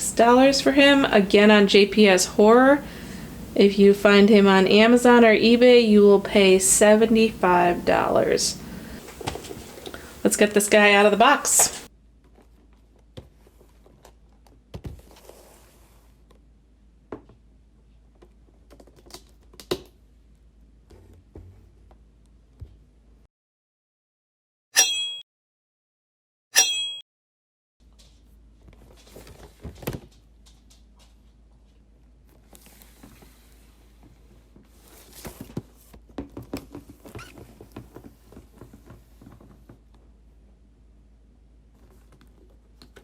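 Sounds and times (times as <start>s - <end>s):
low room hum: 0.0s - 23.3s, 36.8s - 43.0s.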